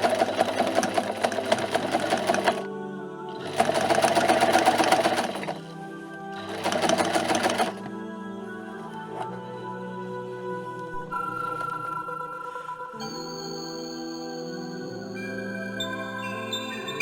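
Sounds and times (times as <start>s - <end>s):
fast mechanical rattling: 0.0s - 2.7s, 3.4s - 5.6s, 6.5s - 7.8s
background music of held tones: 0.0s - 17.0s.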